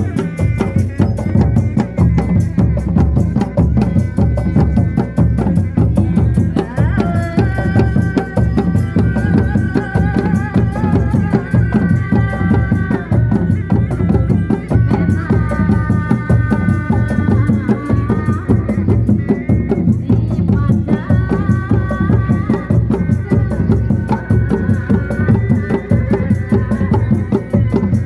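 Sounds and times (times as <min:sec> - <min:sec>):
fast drumming: 0:00.0 - 0:28.0.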